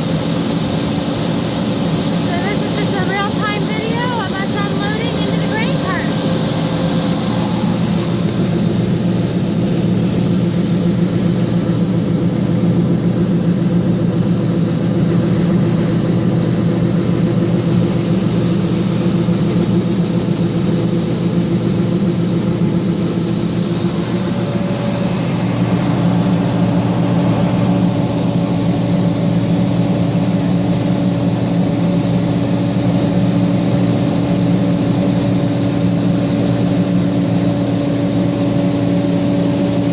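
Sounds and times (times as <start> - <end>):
combine diesel engine droning: 0.0 - 31.8.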